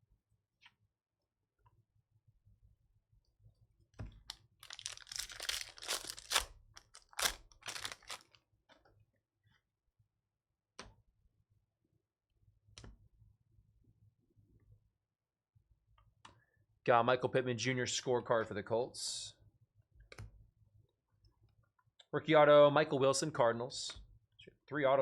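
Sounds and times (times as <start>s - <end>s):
wrapper tearing and crinkling: 4.6s - 8.4s.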